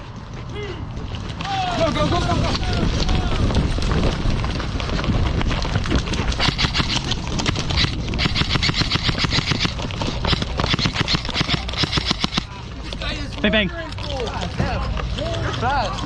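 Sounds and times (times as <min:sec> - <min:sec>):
airsoft guns firing full auto: 0:06.3 - 0:12.6.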